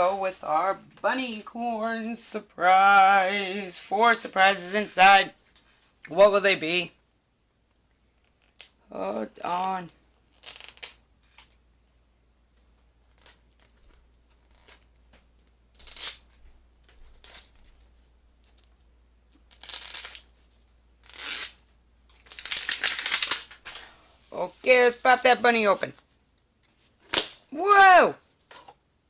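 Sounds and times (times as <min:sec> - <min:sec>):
packaging tearing and crinkling: 0:09.5 - 0:11.5, 0:19.5 - 0:20.3, 0:21.0 - 0:23.8.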